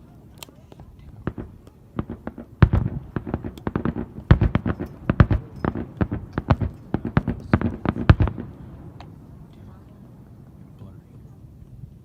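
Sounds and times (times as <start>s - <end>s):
fireworks bangs and pops: 0.8s - 9.2s
heavy firework booms: 1.2s - 9.1s.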